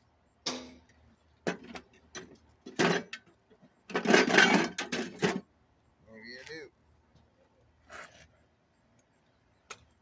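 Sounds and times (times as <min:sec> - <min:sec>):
metal clanks and knocks: 0:00.4 - 0:05.5.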